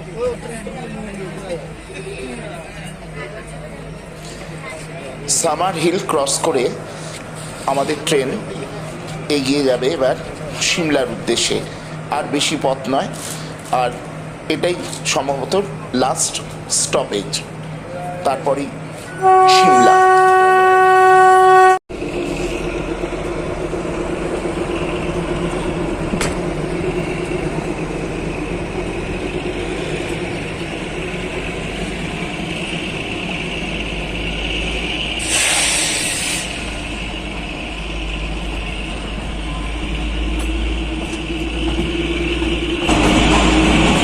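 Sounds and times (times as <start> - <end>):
brief hiss: 35.2 - 36.7.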